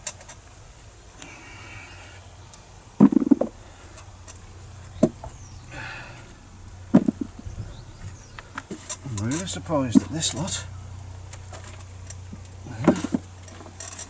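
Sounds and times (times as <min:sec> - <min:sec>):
potatoes thudding and knocking: 0:03.0 - 0:03.6, 0:06.9 - 0:10.5, 0:12.7 - 0:13.8.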